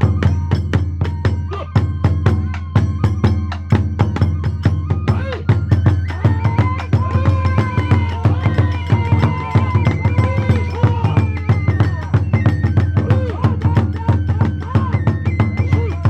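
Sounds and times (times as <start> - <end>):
flute melody: 0.0 - 16.0
hand cymbals: 0.0 - 16.0
taiko drums: 0.0 - 16.0.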